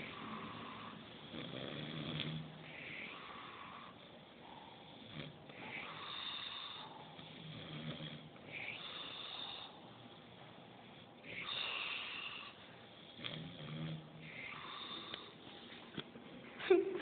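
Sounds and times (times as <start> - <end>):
man snoring: 0.0 - 3.9, 4.7 - 9.8, 13.1 - 15.3.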